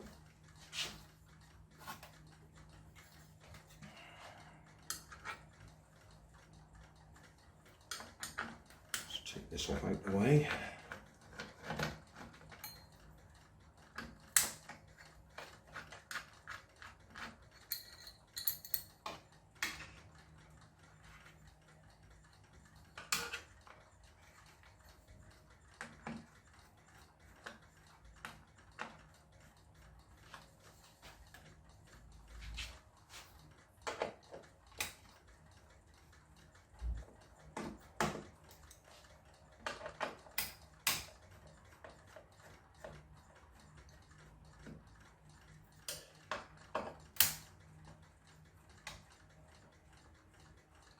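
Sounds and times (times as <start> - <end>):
tools and parts clicking and knocking: 4.7 - 6.2, 6.9 - 9.2, 10.5 - 20.3, 22.4 - 24.3, 25.6 - 35.3, 36.8 - 43.0, 45.6 - 48.0.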